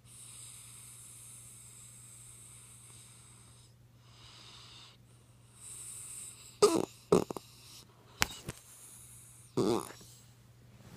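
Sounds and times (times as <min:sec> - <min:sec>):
dog snoring: 0:00.0 - 0:10.2.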